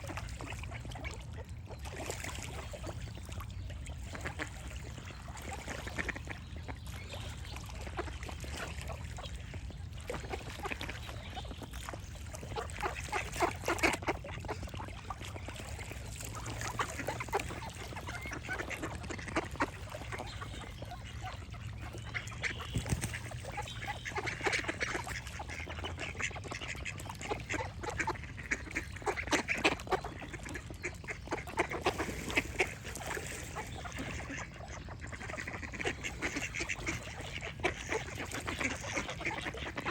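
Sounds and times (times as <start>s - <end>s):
ducks quacking: 12.4s - 39.9s.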